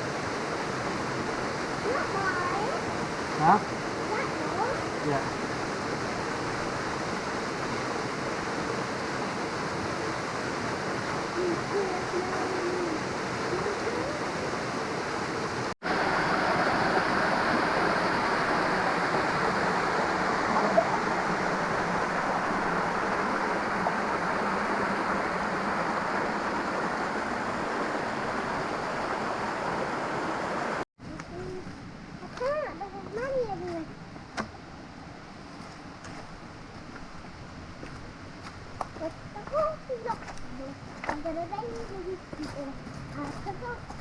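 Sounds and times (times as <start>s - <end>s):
waterfall rushing into pool: 0.0s - 30.9s.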